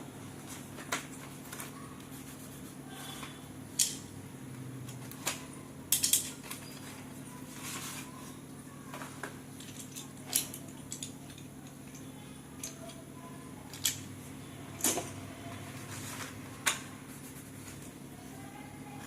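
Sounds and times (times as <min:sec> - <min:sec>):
pencils clicking and tapping: 0:00.5 - 0:04.1, 0:04.8 - 0:08.1, 0:08.8 - 0:13.1, 0:13.7 - 0:14.2.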